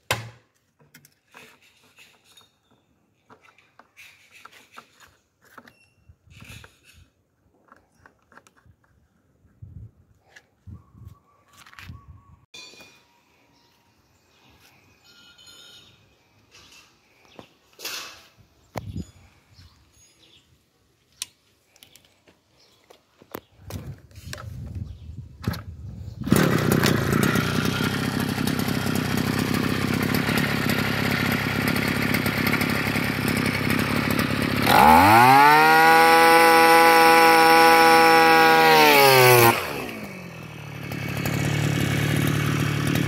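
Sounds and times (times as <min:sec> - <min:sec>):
small petrol engine revving: 0:26.0 - 0:43.0.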